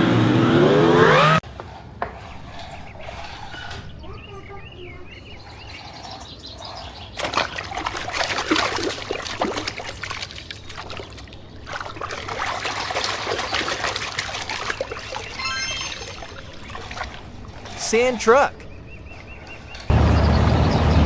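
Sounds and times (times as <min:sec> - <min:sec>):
water pouring and trickling: 0:07.2 - 0:17.9
short rising tones: 0:15.4 - 0:16.4.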